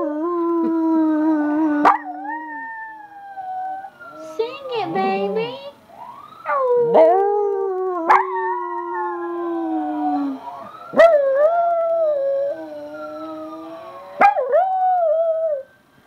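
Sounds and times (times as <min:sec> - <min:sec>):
dog howling: 0:00.0 - 0:05.7, 0:06.4 - 0:15.6
second lower howling voice: 0:04.2 - 0:05.7.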